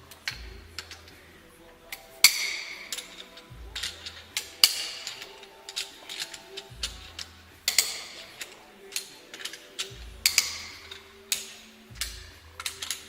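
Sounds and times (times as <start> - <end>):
low thuds: 0.0 - 1.3, 3.4 - 6.0, 6.7 - 8.4, 9.9 - 11.1, 11.9 - 13.0
metallic clicks of hand tools: 1.9 - 13.0.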